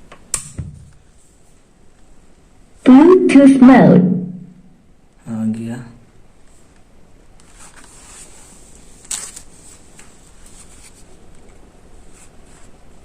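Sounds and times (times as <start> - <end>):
sharp click: 0.3 - 0.6.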